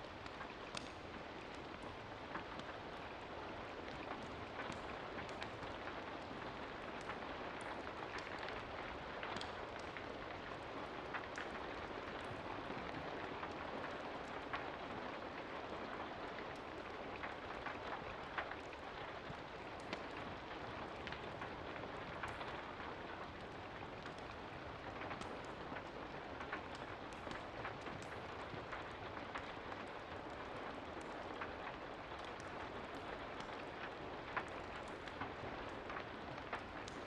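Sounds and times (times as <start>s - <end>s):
steady rain falling: 0.0s - 37.0s
sharp pops and ticks: 0.3s - 1.0s.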